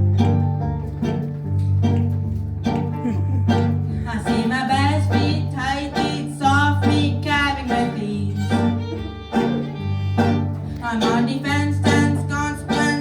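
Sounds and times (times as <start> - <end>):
low bass notes: 0.0 - 13.0.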